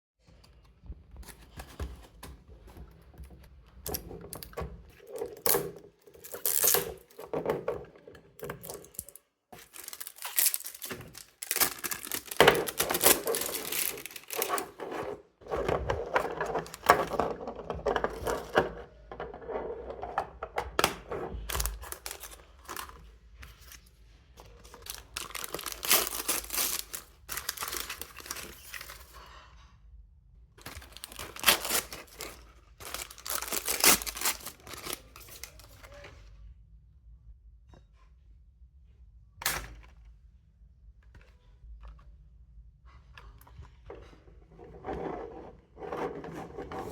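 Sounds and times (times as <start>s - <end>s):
packaging tearing and crinkling: 5.0s - 7.2s, 8.5s - 15.1s, 21.4s - 23.0s, 24.5s - 29.2s, 30.6s - 35.8s.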